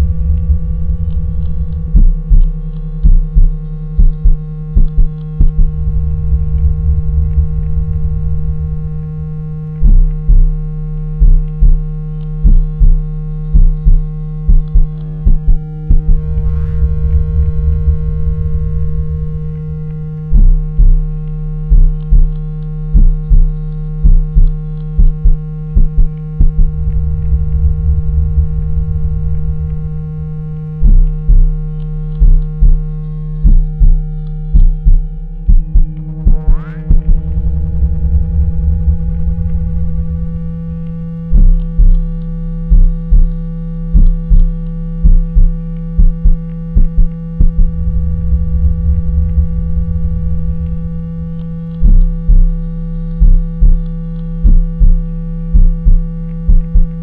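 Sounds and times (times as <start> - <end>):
deep thumps: 0.0 - 57.0
electronic hum and tones: 0.0 - 57.0
low buzz: 0.0 - 57.0
slow rising and falling sweeps: 47.6 - 51.8.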